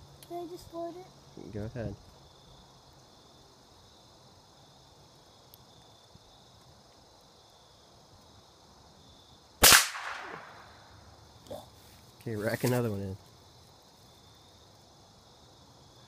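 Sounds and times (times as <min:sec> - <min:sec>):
crickets chirping: 0:00.0 - 0:16.0
rifle shot: 0:09.6 - 0:10.8.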